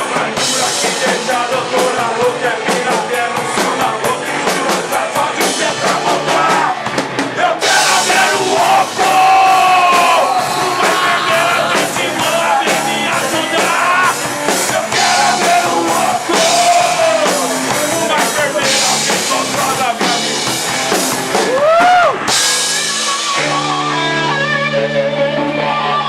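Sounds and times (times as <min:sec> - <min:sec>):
person singing and yelling: 0:00.0 - 0:20.5
drum kit beat: 0:00.0 - 0:24.8
rock band playing live: 0:00.0 - 0:26.0.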